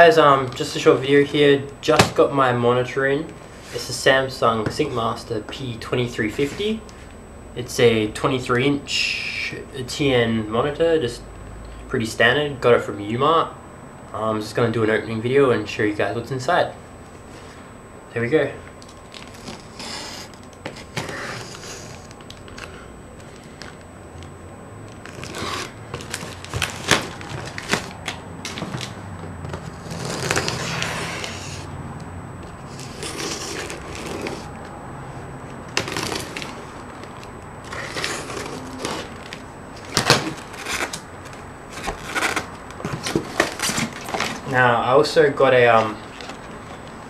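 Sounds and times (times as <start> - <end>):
cardboard box rustling and scraping: 25.0 - 31.7, 32.7 - 34.6, 35.7 - 44.6.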